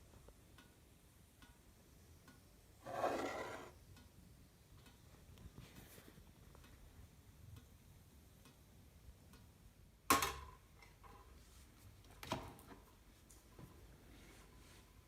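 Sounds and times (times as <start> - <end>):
faint ticking and clicking: 0.0 - 2.8, 3.8 - 10.1.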